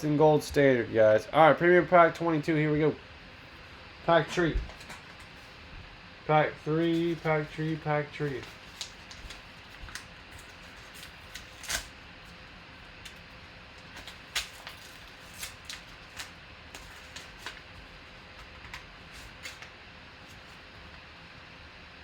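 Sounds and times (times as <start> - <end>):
plastic packaging crinkling: 6.8 - 12.4, 13.0 - 19.7.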